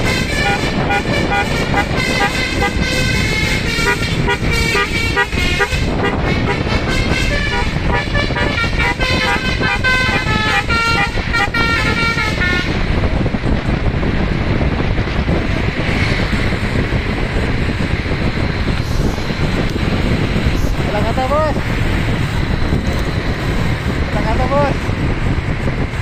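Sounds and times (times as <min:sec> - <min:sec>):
musical air horn: 0:00.0 - 0:12.8
road noise: 0:00.0 - 0:26.0.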